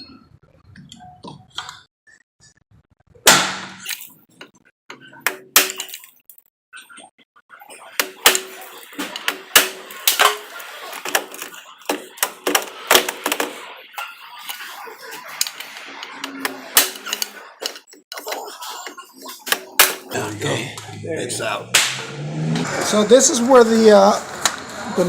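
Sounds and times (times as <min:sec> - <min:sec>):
hand tools clicking and clanking: 0:07.9 - 0:21.0.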